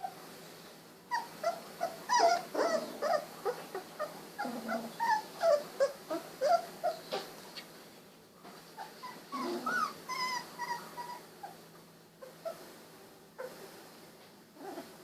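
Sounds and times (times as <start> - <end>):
puppies whimpering and squeaking: 1.1 - 7.3, 8.7 - 11.6, 12.2 - 12.7.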